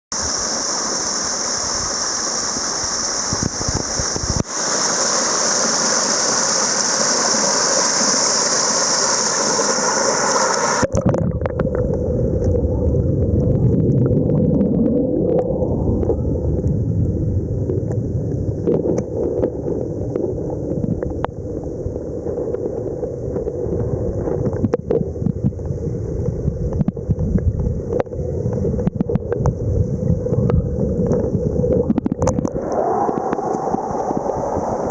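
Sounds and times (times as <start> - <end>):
waterfall rushing: 0.2 - 10.9.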